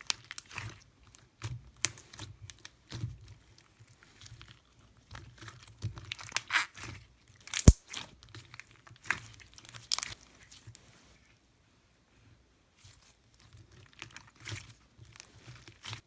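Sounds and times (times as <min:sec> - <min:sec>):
slime crackling and popping: 0:07.6 - 0:07.8.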